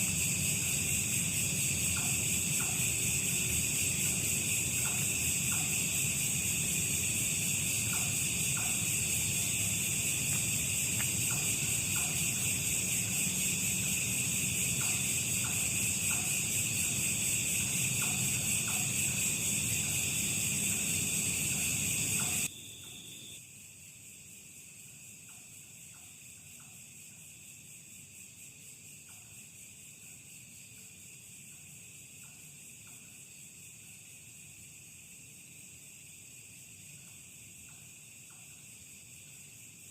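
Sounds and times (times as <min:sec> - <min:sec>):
crickets and insects chirping: 0:00.0 - 0:39.9
faint ticks: 0:04.0 - 0:06.0, 0:07.8 - 0:09.0, 0:10.2 - 0:13.2, 0:14.7 - 0:19.2, 0:25.1 - 0:27.2, 0:29.0 - 0:29.6, 0:30.7 - 0:33.3, 0:36.9 - 0:38.8.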